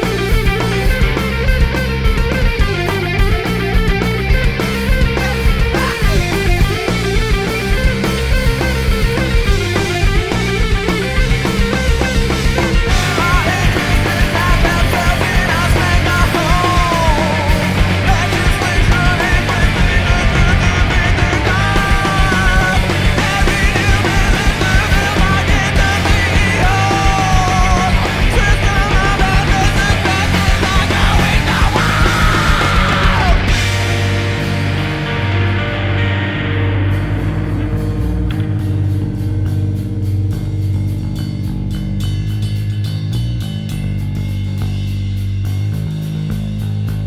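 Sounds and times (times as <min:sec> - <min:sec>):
post-punk rock band playing: 0:00.0 - 0:47.0
shouted voice: 0:26.6 - 0:33.5.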